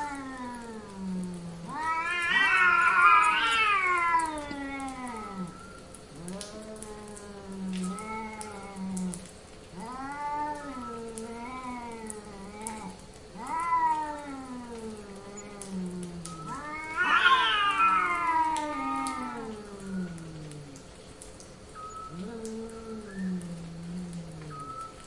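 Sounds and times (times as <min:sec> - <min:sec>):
cat yowling: 0:00.0 - 0:20.8.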